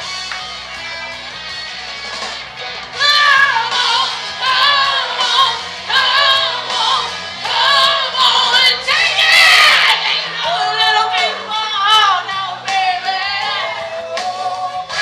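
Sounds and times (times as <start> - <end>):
music with sung vocals: 0.0 - 15.0.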